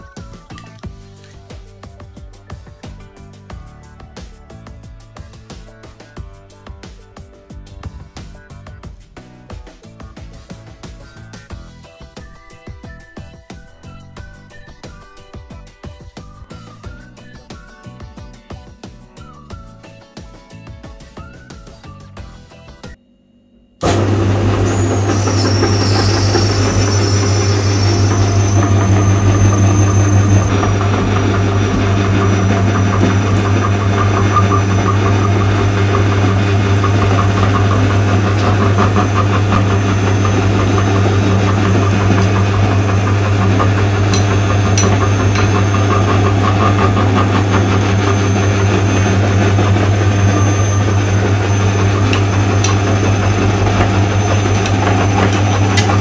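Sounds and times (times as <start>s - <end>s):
low-pitched mechanical hum: 23.0s - 56.0s.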